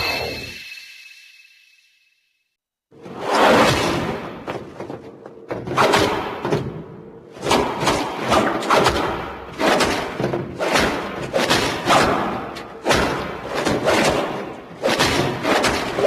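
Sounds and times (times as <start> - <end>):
music: 0.0 - 2.5.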